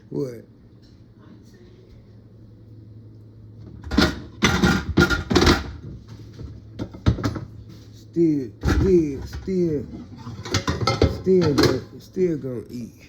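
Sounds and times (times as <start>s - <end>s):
steady low hum: 0.0s - 13.0s
dishes knocking and rattling: 3.8s - 7.5s, 8.6s - 11.9s.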